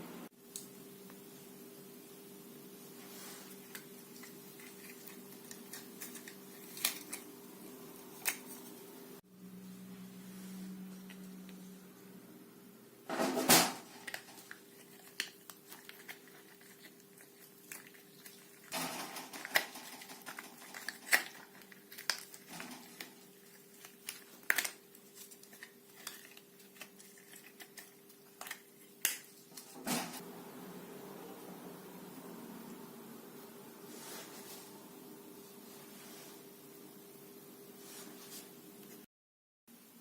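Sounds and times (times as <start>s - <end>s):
faint steady hum: 0.0s - 39.0s
small hard objects clattering: 13.8s - 28.6s.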